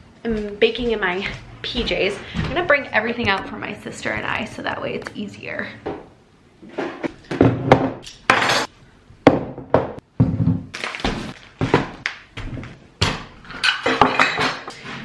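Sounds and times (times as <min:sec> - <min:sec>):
objects thunking on countertop: 0:09.3 - 0:13.2.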